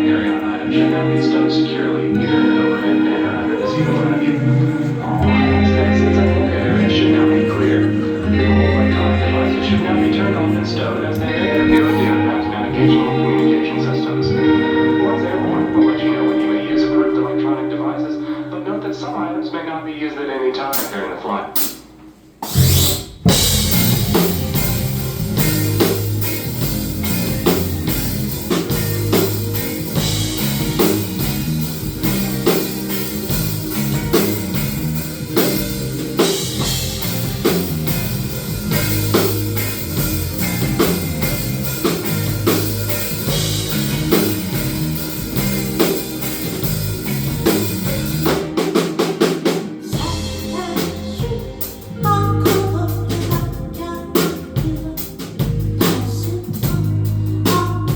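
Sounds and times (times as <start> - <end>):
bass line: 0.0 - 18.1, 22.5 - 49.3, 49.9 - 57.9
band music: 0.0 - 57.9
drum kit beat: 21.6 - 57.9.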